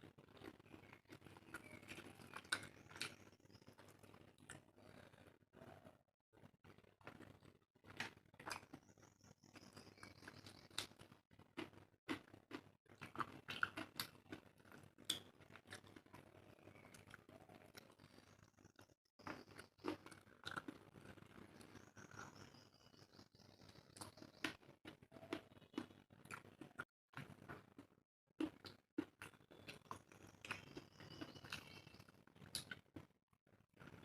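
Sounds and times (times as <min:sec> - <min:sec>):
wet chewing and smacking: 0:00.2 - 0:05.3, 0:06.6 - 0:33.1
crunchy bites: 0:19.2 - 0:22.5.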